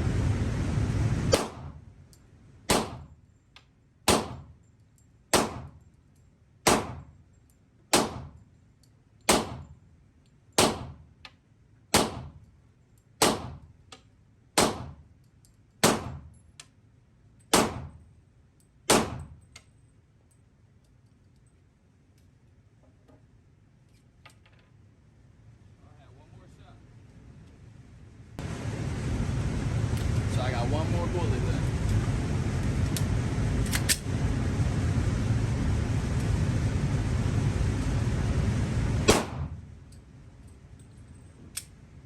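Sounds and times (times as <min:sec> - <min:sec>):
handgun shots with echo: 0:01.3 - 0:01.8, 0:02.7 - 0:03.1, 0:04.1 - 0:04.5, 0:05.3 - 0:05.8, 0:06.6 - 0:07.1, 0:07.9 - 0:08.4, 0:09.3 - 0:09.7, 0:10.6 - 0:11.0, 0:11.9 - 0:12.4, 0:13.2 - 0:13.6, 0:14.6 - 0:15.0, 0:15.8 - 0:16.3, 0:17.5 - 0:18.0, 0:18.9 - 0:19.4, 0:39.1 - 0:39.6.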